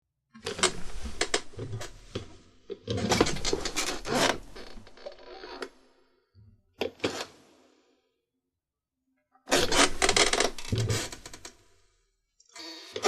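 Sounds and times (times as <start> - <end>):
chair squeaking and creaking: 0.4 - 5.8, 6.8 - 7.4, 9.5 - 11.6.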